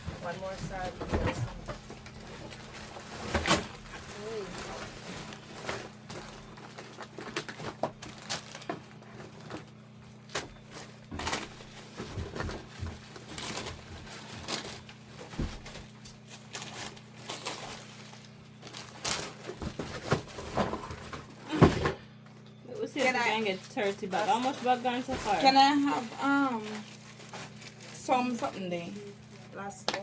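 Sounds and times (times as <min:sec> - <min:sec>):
items knocking and clicking: 0:00.0 - 0:04.1, 0:18.9 - 0:22.4, 0:29.8 - 0:30.0
plastic bags crinkling: 0:00.0 - 0:21.6, 0:22.8 - 0:30.0.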